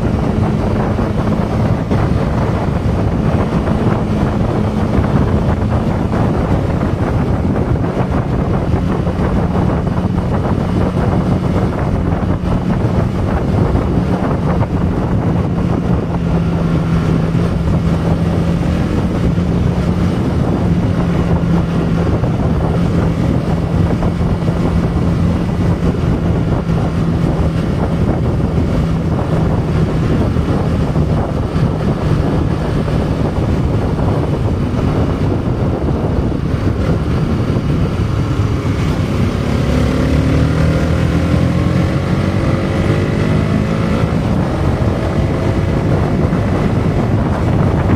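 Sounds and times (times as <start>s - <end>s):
low motorcycle engine hum: 0.0s - 47.9s
wind rushing over microphone: 0.0s - 47.9s.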